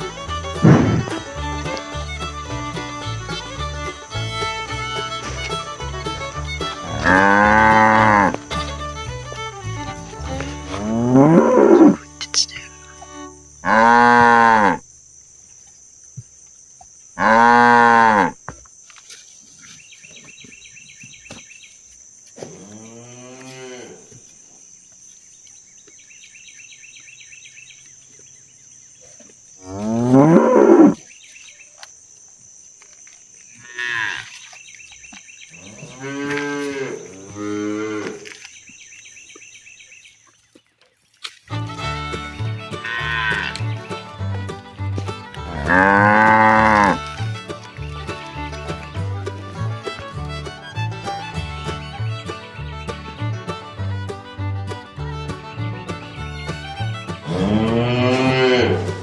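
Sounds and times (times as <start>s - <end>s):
cattle mooing: 0.6s - 1.2s, 6.8s - 8.7s, 10.4s - 12.0s, 13.6s - 14.8s, 17.2s - 18.4s, 29.6s - 31.0s, 35.6s - 38.3s, 42.8s - 43.7s, 45.4s - 47.2s, 57.2s - 59.0s
faint chirping: 18.7s - 23.0s, 23.9s - 37.4s, 38.2s - 41.6s.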